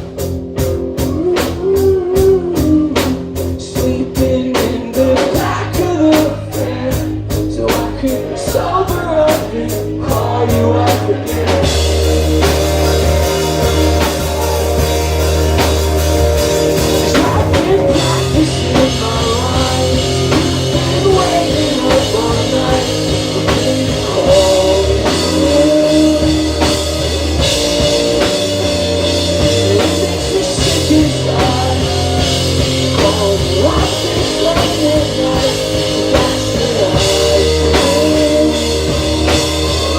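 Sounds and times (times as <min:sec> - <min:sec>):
bass guitar: 0:00.0 - 0:39.9
drum kit: 0:00.0 - 0:39.9
electric guitars: 0:00.0 - 0:39.9.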